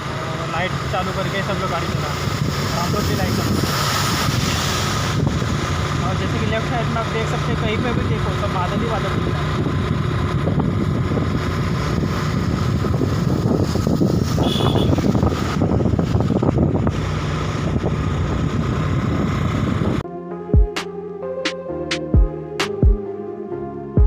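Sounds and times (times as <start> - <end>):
scooter engine: 0.0 - 2.7, 4.9 - 20.0
road noise: 0.0 - 22.8
wind buffeting microphone: 2.0 - 6.4, 9.0 - 20.0.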